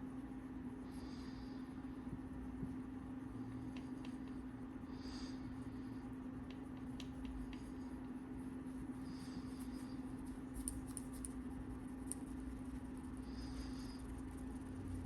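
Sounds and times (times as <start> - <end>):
steady low hum: 0.0 - 15.0
small ticks: 6.4 - 7.8, 9.6 - 12.4.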